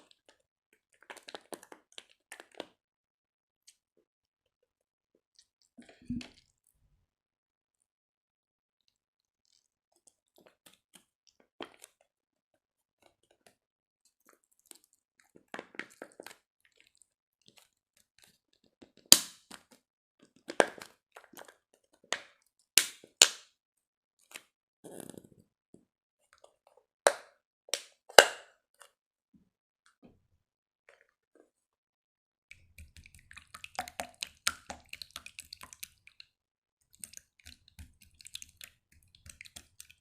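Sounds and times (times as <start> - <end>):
slime squished with popping bubbles: 32.5 - 36.3, 36.9 - 40.0.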